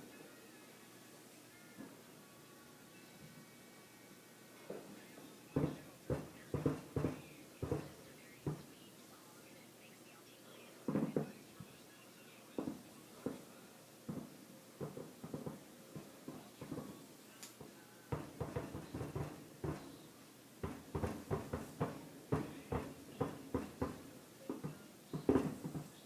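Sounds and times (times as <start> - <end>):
distant fireworks bangs: 4.6 - 8.9, 10.8 - 11.8, 12.5 - 26.0.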